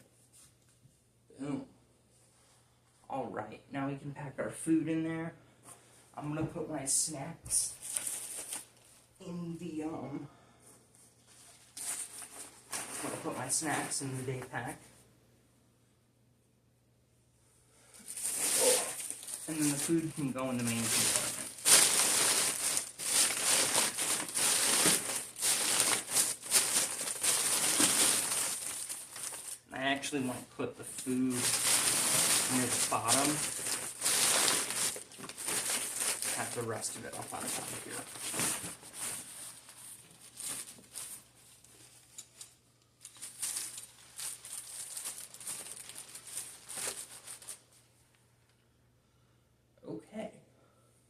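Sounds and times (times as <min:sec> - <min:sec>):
fabric rustling and crinkling: 0:11.0 - 0:14.1, 0:18.0 - 0:29.8, 0:30.8 - 0:47.9.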